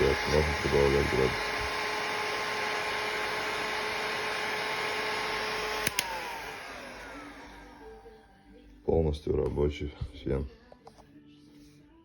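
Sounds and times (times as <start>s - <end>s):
heat gun fan running: 0.0s - 8.0s
heat gun switch clicks: 5.6s - 6.4s.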